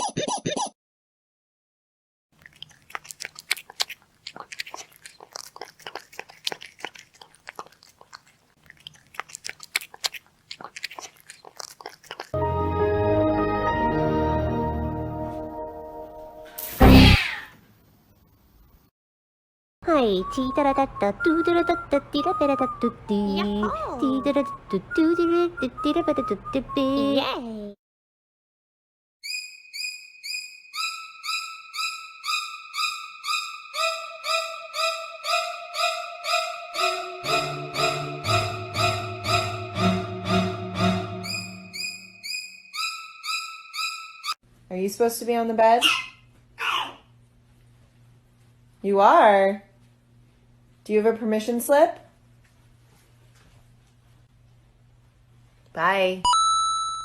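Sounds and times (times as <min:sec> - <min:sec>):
crunchy chewing: 0:02.4 - 0:12.4
bell-like repeated note music: 0:36.4 - 0:41.8.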